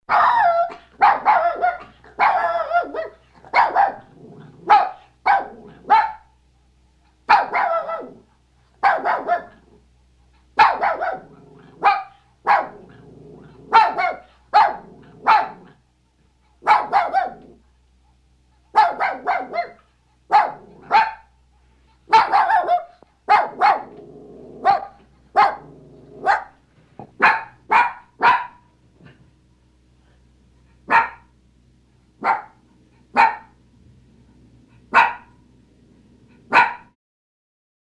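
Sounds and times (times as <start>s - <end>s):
small dog barking: 0.1s - 6.3s, 7.3s - 9.7s, 10.6s - 15.8s, 16.6s - 17.6s, 18.7s - 21.3s, 22.1s - 29.2s, 30.8s - 31.3s, 32.2s - 33.6s, 34.9s - 35.4s, 36.4s - 37.0s.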